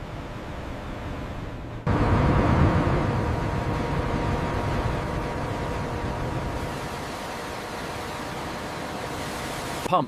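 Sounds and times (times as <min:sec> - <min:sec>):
ship engines rumbling: 0:00.4 - 0:09.9.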